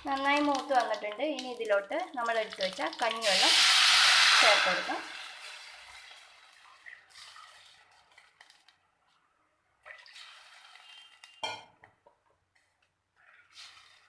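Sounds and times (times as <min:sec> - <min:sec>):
liquid hissing in hot pan: 0:03.0 - 0:06.4.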